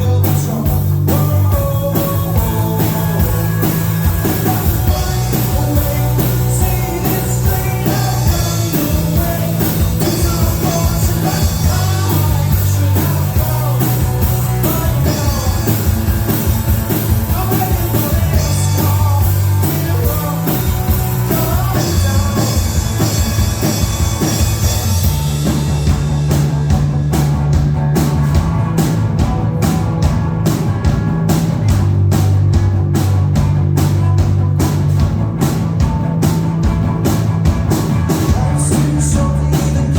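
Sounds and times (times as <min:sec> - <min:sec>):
person singing: 0:00.0 - 0:23.6, 0:38.1 - 0:39.9
drums steady beat: 0:00.0 - 0:39.9
rock band playing live: 0:00.0 - 0:39.9.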